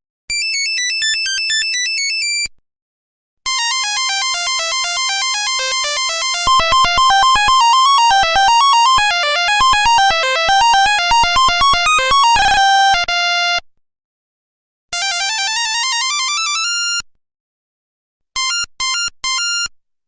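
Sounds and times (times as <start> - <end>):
electronic beep ringtone melody: 3.8 - 13.6.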